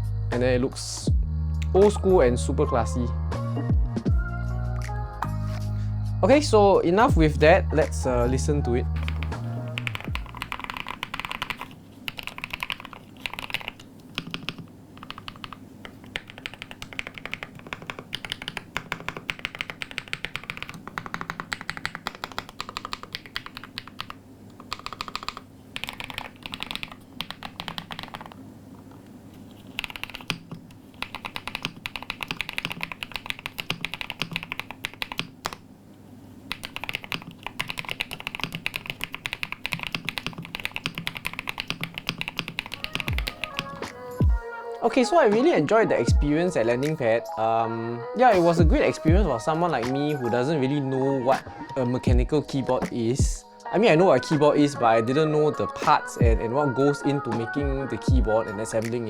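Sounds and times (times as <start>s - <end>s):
mechanical keyboard keystroke clacks: 9.0s - 28.4s, 29.7s - 35.6s, 36.5s - 43.8s.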